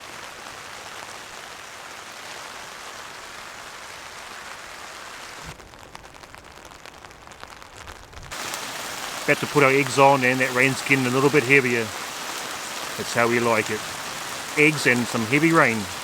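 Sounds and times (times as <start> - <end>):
light rain drops pattering: 0.0 - 16.0
heavy rain hissing: 8.3 - 16.0.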